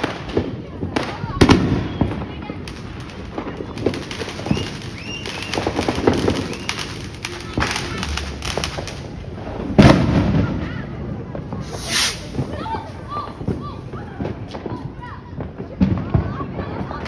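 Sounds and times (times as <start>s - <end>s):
fireworks popping and banging: 0.0s - 17.0s
loud firework bang: 11.5s - 14.4s.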